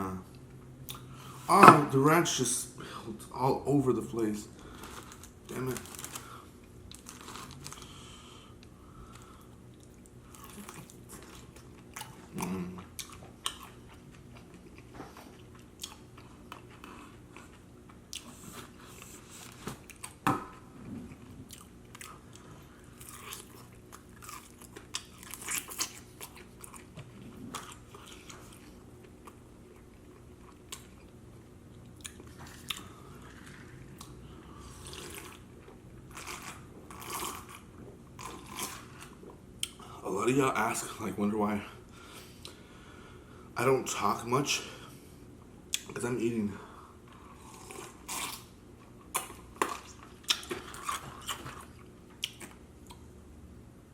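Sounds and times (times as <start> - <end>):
chewing and mouth smacking: 9.7 - 20.2, 21.1 - 34.2, 47.5 - 53.1.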